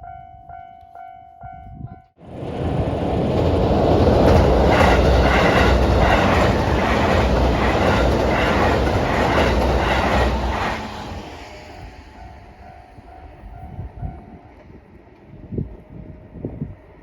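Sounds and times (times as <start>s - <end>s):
train wheels rushing on rails: 2.2s - 17.0s
wheels clacking over rail joints: 2.3s - 11.4s.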